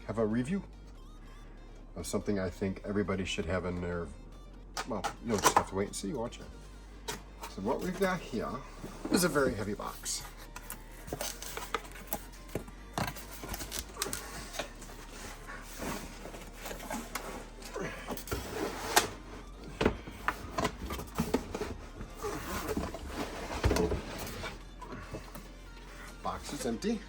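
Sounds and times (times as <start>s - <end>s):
cardboard box rustling and scraping: 7.4s - 25.2s.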